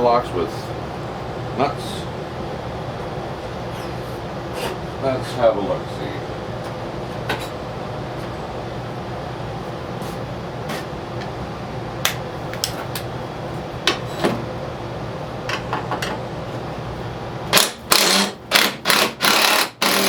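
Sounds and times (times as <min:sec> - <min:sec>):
steady background hum: 0:00.0 - 0:20.0
loud rasping bursts: 0:17.5 - 0:20.0.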